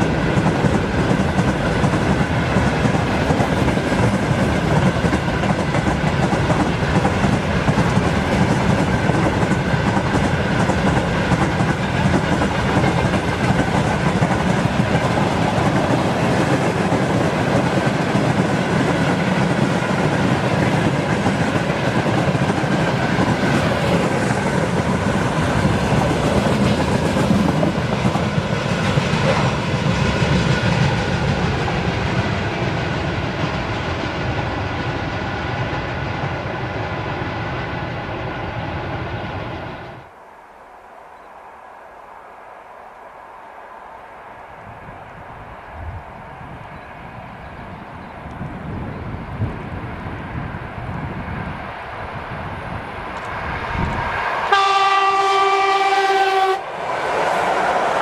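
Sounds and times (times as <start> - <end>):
freight train wagons rolling past: 0.0 - 40.2.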